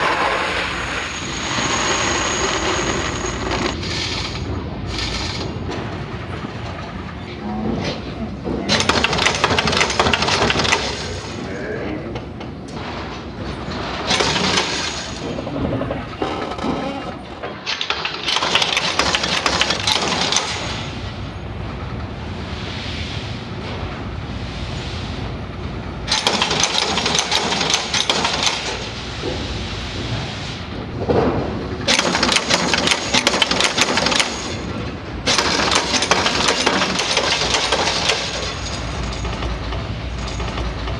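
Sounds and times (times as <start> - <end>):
eyelet machine running: 0.0 - 7.0, 31.8 - 40.9
machine hum: 0.0 - 40.9.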